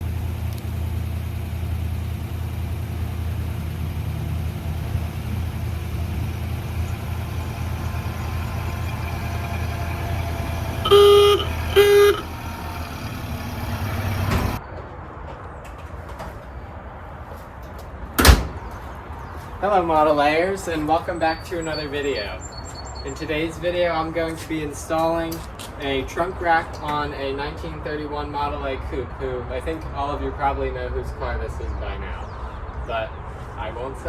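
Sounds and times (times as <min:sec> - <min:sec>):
car engine rumbling: 0:00.0 - 0:14.6
car horn honks: 0:06.8 - 0:14.6.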